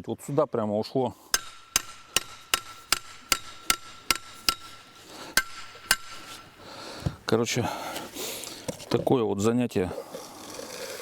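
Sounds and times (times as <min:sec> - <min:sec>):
pry bar striking metal pile: 0:01.4 - 0:06.6.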